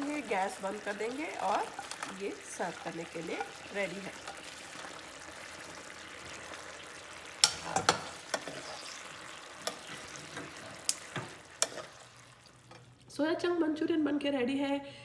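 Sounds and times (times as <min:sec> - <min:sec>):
food sizzling in a pan: 0:00.0 - 0:13.1
spoon knocking against pan: 0:07.4 - 0:08.6.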